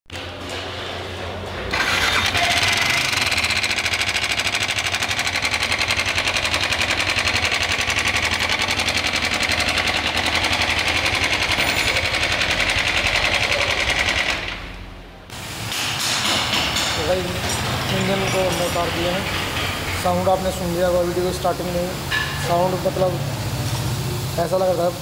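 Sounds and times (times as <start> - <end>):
motorcycle engine running: 1.7 - 14.6.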